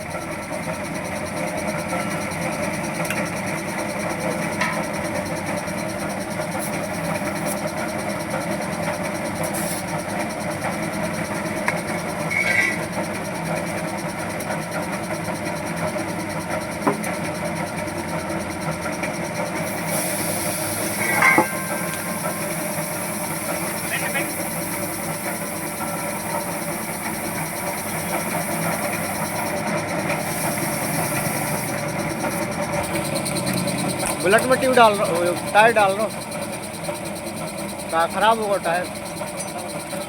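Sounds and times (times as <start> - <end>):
machine humming: 14.8 - 40.0.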